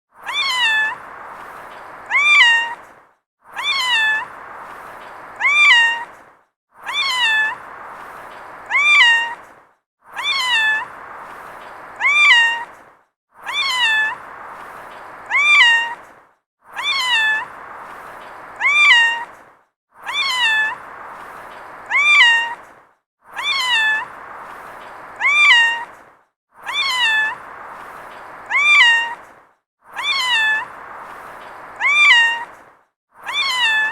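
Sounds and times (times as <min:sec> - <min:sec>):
cat meowing: 0:00.2 - 0:01.0, 0:02.1 - 0:02.8, 0:03.6 - 0:04.3, 0:05.4 - 0:06.1, 0:06.8 - 0:07.6, 0:08.7 - 0:09.4, 0:10.2 - 0:10.9, 0:12.0 - 0:12.6, 0:13.4 - 0:14.2, 0:15.3 - 0:16.0, 0:16.8 - 0:17.5, 0:18.6 - 0:19.2, 0:20.0 - 0:20.8, 0:21.9 - 0:22.6, 0:23.4 - 0:24.0, 0:25.2 - 0:25.9, 0:26.6 - 0:27.4, 0:28.5 - 0:29.2, 0:30.0 - 0:30.7, 0:31.8 - 0:32.5, 0:33.2 - 0:33.9.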